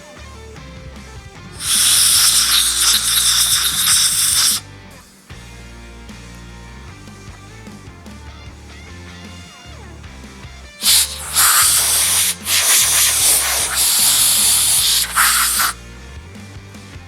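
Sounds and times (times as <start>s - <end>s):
compressed air hissing: 1.6s - 5.3s, 10.8s - 15.8s.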